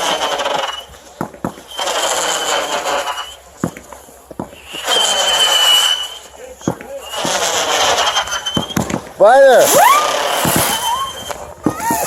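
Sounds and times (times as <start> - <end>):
fireworks hissing bursts: 0.0 - 12.0
fireworks sharp pops: 0.0 - 12.0
high whistle: 1.7 - 3.4, 4.6 - 6.4, 7.0 - 8.9, 9.6 - 12.0.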